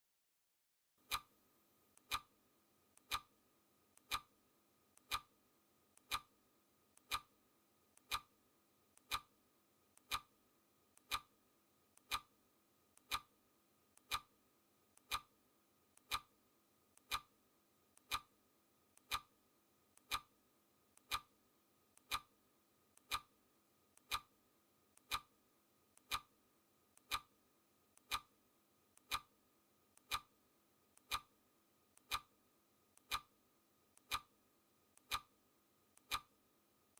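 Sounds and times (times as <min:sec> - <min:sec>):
clock ticking: 0:01.0 - 0:01.3, 0:02.0 - 0:02.3, 0:03.0 - 0:03.3, 0:04.0 - 0:04.3, 0:05.0 - 0:05.3, 0:06.0 - 0:06.3, 0:07.0 - 0:07.3, 0:08.0 - 0:08.3, 0:09.0 - 0:09.3, 0:10.0 - 0:10.3, 0:11.0 - 0:11.3, 0:12.0 - 0:12.3, 0:13.0 - 0:13.3, 0:14.0 - 0:14.3, 0:15.0 - 0:15.3, 0:16.0 - 0:16.3, 0:17.0 - 0:17.3, 0:18.0 - 0:18.3, 0:19.0 - 0:19.3, 0:20.0 - 0:20.3, 0:21.0 - 0:21.3, 0:22.0 - 0:22.3, 0:23.0 - 0:23.3, 0:24.0 - 0:24.3, 0:25.0 - 0:25.3, 0:26.0 - 0:26.3, 0:27.0 - 0:27.3, 0:28.0 - 0:28.3, 0:29.0 - 0:29.3, 0:30.0 - 0:30.3, 0:31.0 - 0:31.3, 0:32.0 - 0:32.3, 0:33.0 - 0:33.3, 0:34.0 - 0:34.3, 0:35.0 - 0:35.3, 0:36.0 - 0:36.3.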